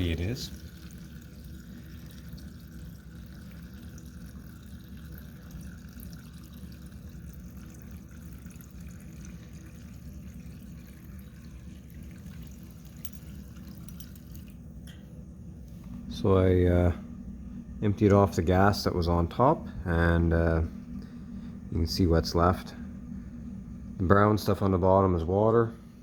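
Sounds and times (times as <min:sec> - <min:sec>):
fuel dripping into container: 0:00.0 - 0:15.1.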